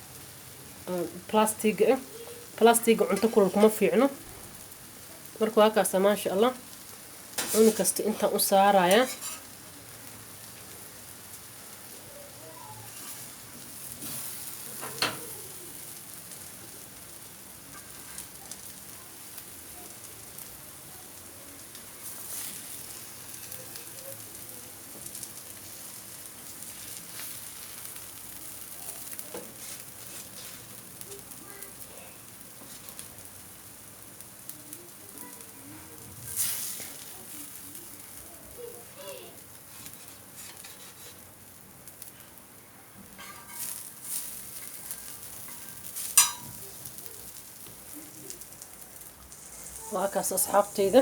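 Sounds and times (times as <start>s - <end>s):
oil sizzling in a frying pan: 0.0s - 51.0s
sharp clink: 46.2s - 46.6s.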